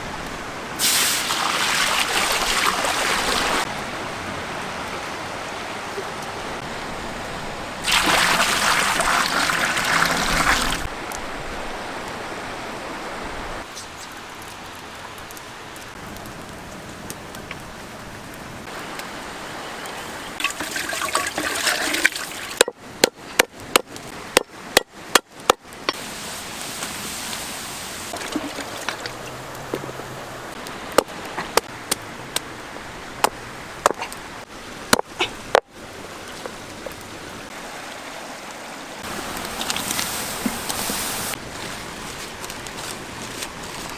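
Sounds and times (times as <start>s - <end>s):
water splashing gush: 0.6s - 11.0s, 15.6s - 22.6s, 25.9s - 31.9s, 34.2s - 43.9s
water running and trickling: 0.8s - 3.7s, 7.3s - 10.9s, 18.6s - 22.8s, 25.9s - 31.9s, 32.9s - 43.9s.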